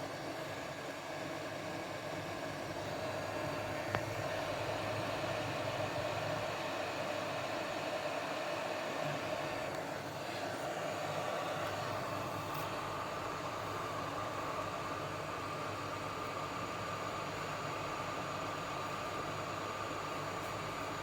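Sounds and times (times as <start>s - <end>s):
fan hum: 0.0s - 21.0s
hot air blower hissing: 0.0s - 21.0s.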